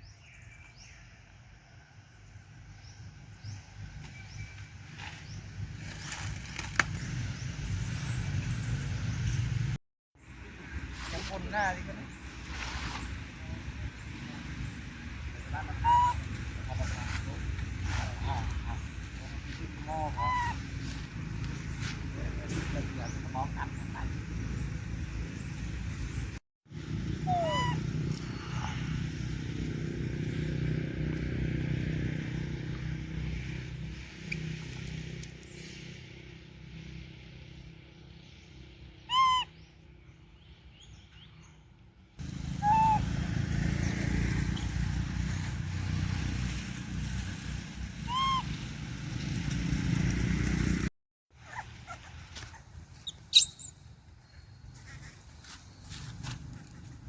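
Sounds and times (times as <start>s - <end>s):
monkey coo calls: 15.4s - 19.0s, 19.6s - 20.9s, 27.2s - 28.8s, 39.1s - 39.5s, 42.3s - 43.4s, 48.0s - 48.6s, 51.5s - 53.7s
sharp high squeal: 53.1s - 53.8s.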